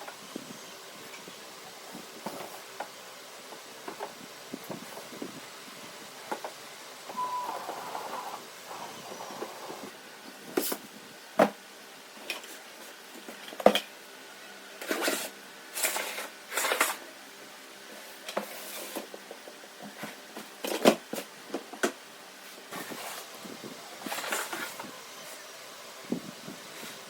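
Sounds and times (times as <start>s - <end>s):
scraping and shuffling: 22.4s - 25.5s.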